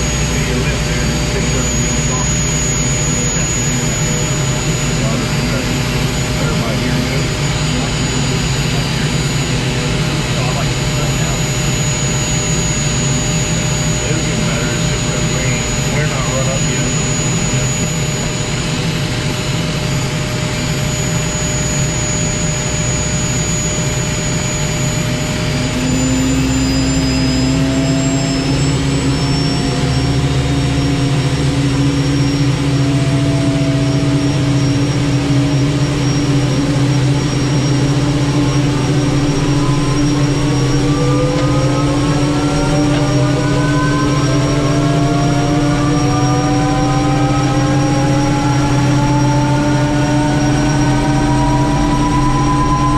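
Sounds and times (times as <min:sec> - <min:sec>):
helicopter engine and rotors: 0:00.0 - 0:52.9
rising whines: 0:00.0 - 0:52.9
steady tone: 0:00.0 - 0:52.9.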